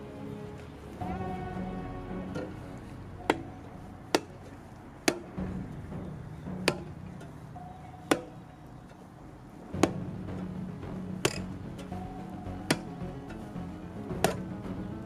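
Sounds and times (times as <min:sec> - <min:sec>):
background music: 0:00.0 - 0:15.0
hand tool striking bat: 0:03.2 - 0:06.0, 0:06.6 - 0:09.0, 0:09.7 - 0:10.1, 0:11.2 - 0:13.4, 0:14.2 - 0:14.5.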